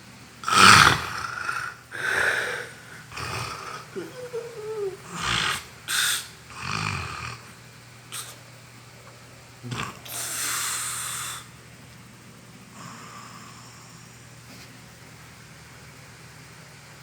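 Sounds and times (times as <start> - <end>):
breathy exhale: 0.4 - 6.4, 9.6 - 11.6
person snoring loudly: 0.4 - 8.4, 9.6 - 11.5, 12.7 - 13.9.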